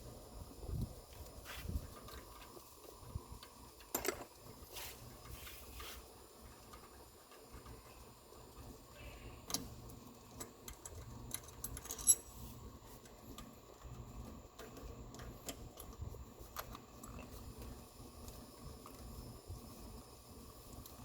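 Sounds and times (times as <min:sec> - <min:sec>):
low steady hum: 0:00.0 - 0:21.0.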